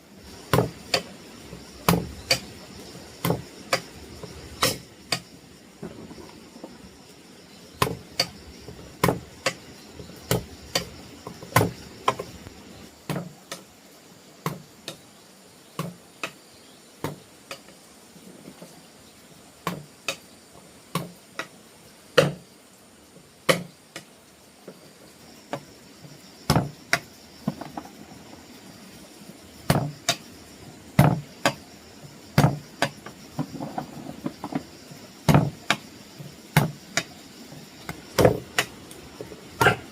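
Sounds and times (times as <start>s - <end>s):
faint high insect drone: 0.0s - 39.9s
sharp knocks: 0.5s - 1.1s, 1.8s - 2.5s, 9.0s - 9.6s, 26.5s - 27.8s, 32.4s - 33.5s, 35.3s - 35.8s.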